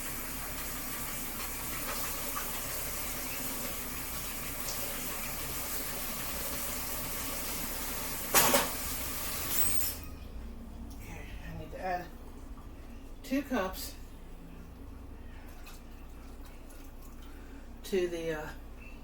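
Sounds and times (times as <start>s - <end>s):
loud clunk: 8.3s - 8.8s.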